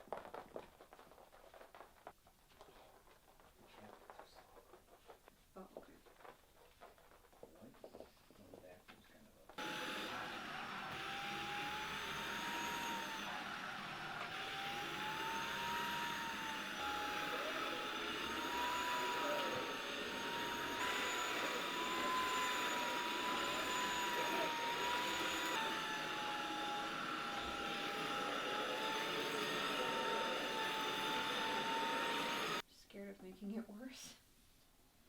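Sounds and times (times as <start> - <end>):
vacuum cleaner running: 9.6 - 32.6.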